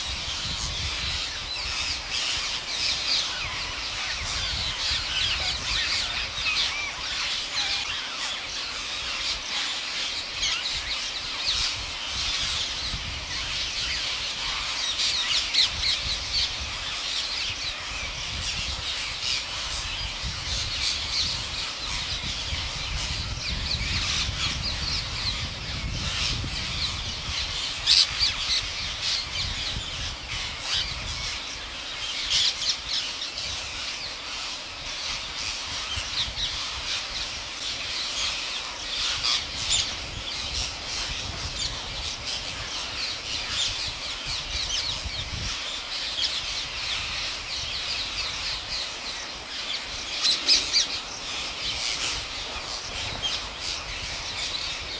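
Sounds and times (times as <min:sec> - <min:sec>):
parrots squawking and chattering: 0:45.9 - 0:54.9.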